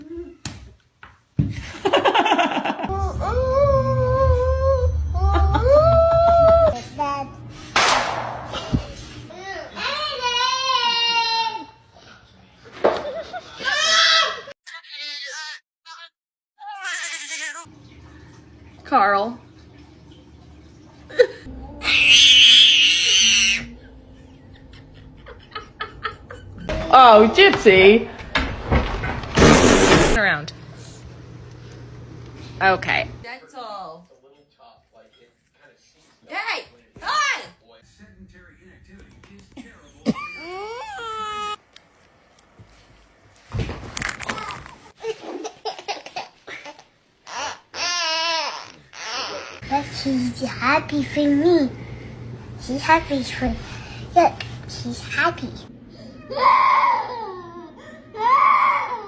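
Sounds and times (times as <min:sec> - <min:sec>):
person laughing in choppy bursts: 0:01.7 - 0:02.9.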